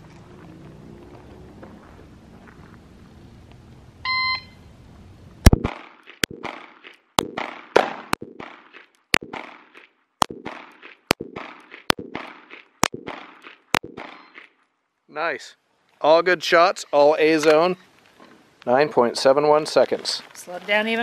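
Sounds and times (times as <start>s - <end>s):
timer start beep: 4.1s - 4.6s
pistol shots echoing: 5.5s - 14.4s.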